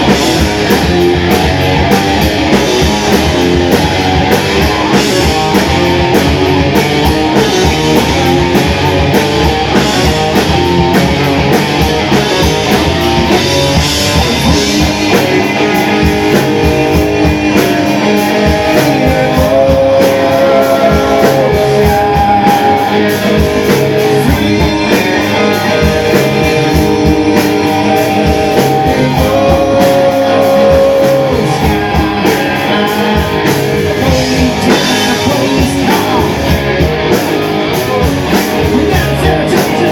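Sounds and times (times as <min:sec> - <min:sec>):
rock band playing instrumental: 0:00.0 - 0:39.9.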